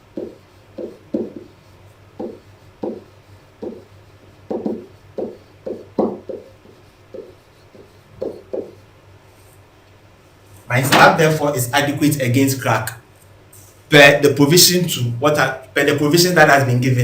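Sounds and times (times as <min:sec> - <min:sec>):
pen writing strokes: 0:00.1 - 0:08.9.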